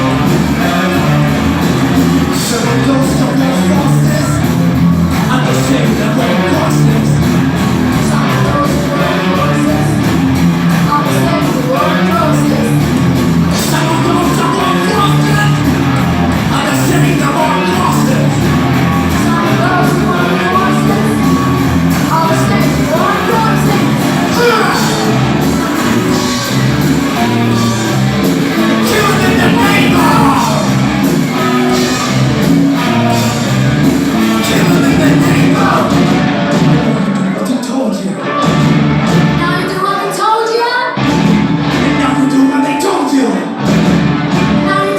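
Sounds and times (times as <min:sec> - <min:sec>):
live rock band playing: 0:00.0 - 0:44.9
person singing: 0:16.5 - 0:26.4, 0:28.7 - 0:32.0, 0:34.3 - 0:37.0.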